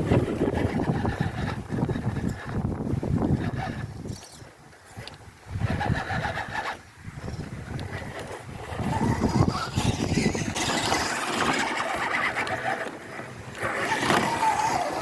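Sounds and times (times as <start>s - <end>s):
rc car electric motor whining: 5.0s - 15.0s.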